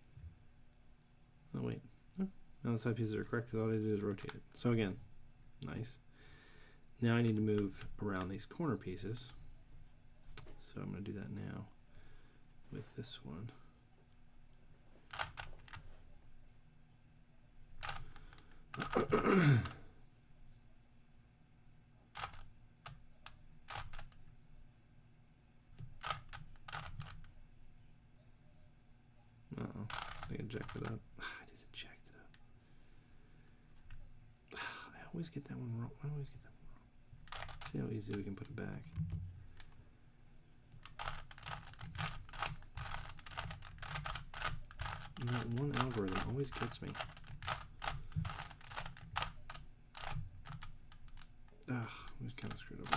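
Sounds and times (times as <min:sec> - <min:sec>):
puzzle cube layers clicking: 0:25.8 - 0:27.2, 0:29.9 - 0:31.0, 0:37.3 - 0:38.6, 0:40.8 - 0:51.3, 0:52.4 - 0:52.9.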